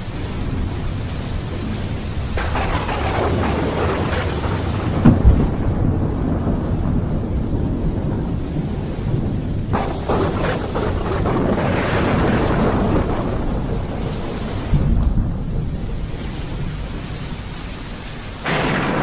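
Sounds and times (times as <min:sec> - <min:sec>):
crackling thunder clap: 0:00.0 - 0:19.0
low thunder rumble: 0:00.0 - 0:19.0
steady rain: 0:00.0 - 0:19.0
sharp thunder crack: 0:02.2 - 0:16.8, 0:18.4 - 0:19.0.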